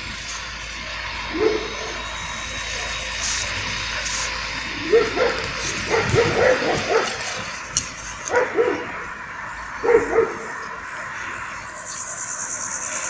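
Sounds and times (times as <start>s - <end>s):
dog barking: 1.3s - 2.0s, 4.8s - 7.5s, 8.2s - 9.0s, 9.8s - 10.6s.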